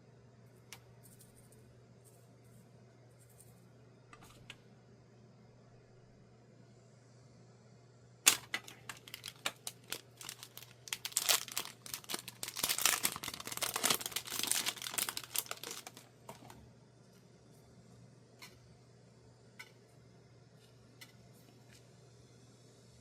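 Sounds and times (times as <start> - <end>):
plastic packaging crinkling: 8.3 - 16.6.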